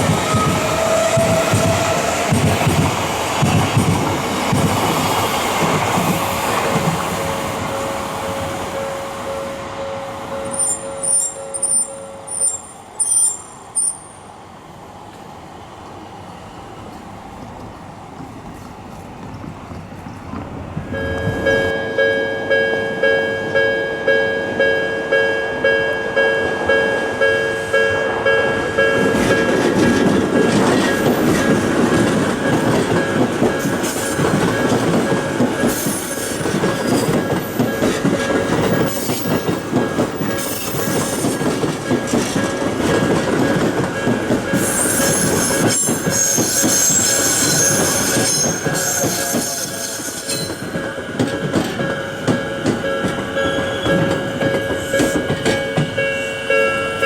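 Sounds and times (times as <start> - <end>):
train wheels on rails: 0.0 - 57.0
level-crossing alarm ringing: 7.6 - 14.1, 21.0 - 41.2, 41.9 - 57.0
high-pitched squeal: 44.6 - 50.7.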